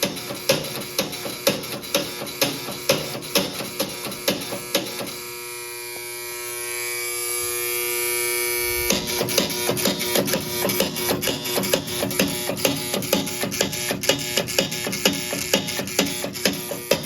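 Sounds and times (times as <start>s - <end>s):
continuous buzzing tone: 0.0s - 17.0s
steady hum: 0.0s - 17.0s.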